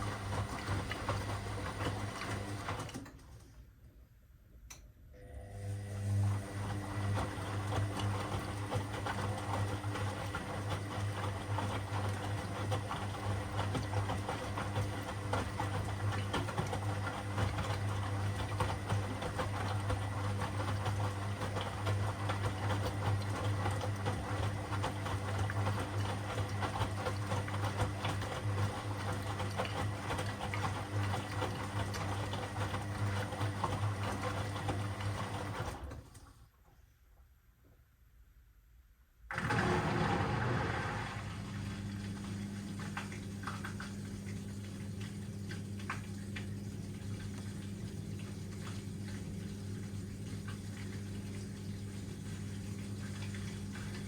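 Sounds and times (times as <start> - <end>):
washing machine running: 0.0 - 3.6, 5.2 - 36.5, 39.3 - 54.0.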